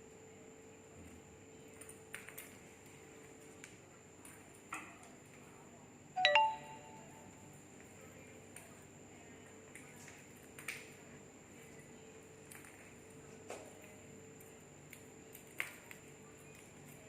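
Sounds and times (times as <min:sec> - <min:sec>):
bell-like chime: 0:06.2 - 0:07.0.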